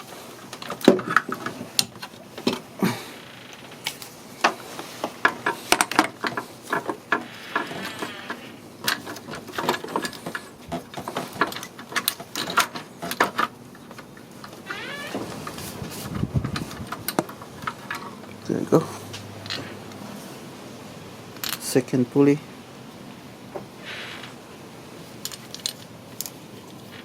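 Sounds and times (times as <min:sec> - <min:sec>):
metal tools clicking and clinking: 0:25.2 - 0:26.4.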